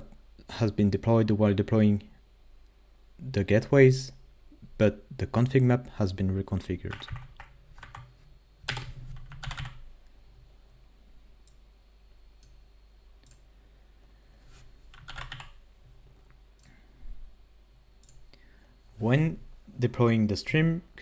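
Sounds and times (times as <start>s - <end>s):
computer keyboard typing: 6.9s - 8.1s, 8.7s - 9.8s, 14.9s - 15.6s.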